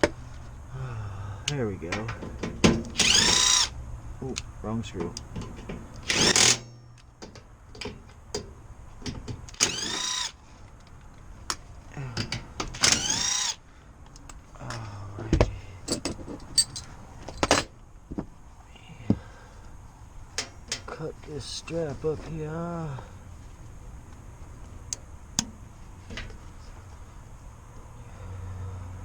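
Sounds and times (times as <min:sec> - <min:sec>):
power driver motor whirring: 0:02.8 - 0:03.8, 0:06.0 - 0:06.7, 0:09.5 - 0:10.4, 0:12.8 - 0:13.6
clicks and knocks of tools: 0:04.3 - 0:17.7, 0:20.3 - 0:21.4.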